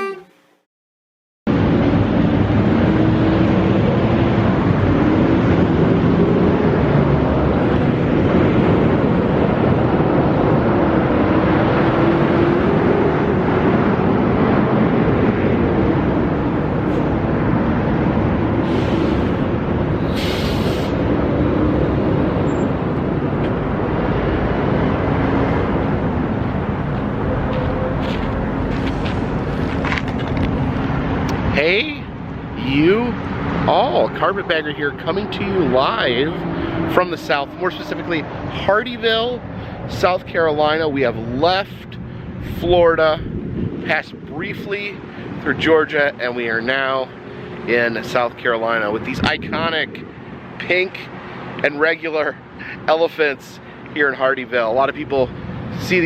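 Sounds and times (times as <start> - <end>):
car engine and road noise: 1.5 - 56.0
brief hisses: 20.1 - 21.0.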